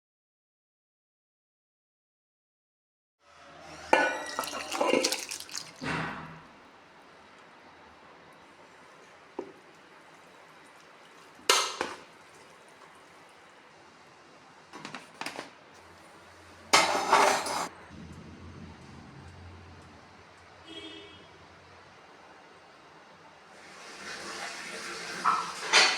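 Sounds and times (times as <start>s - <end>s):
metal pots and utensils clanking: 3.9s - 6.3s, 9.0s - 12.9s, 16.7s - 17.7s, 25.2s - 25.9s.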